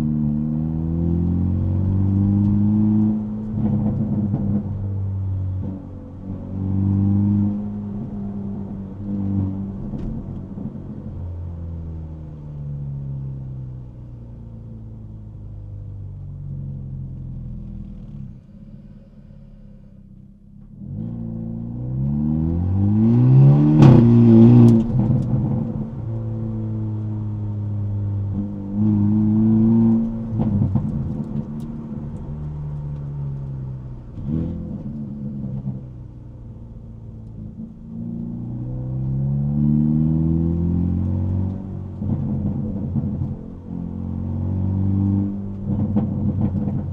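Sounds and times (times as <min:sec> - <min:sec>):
car exhaust revving: 0:16.1 - 0:46.9
exhaust cracks: 0:23.7 - 0:37.9, 0:45.2 - 0:46.9.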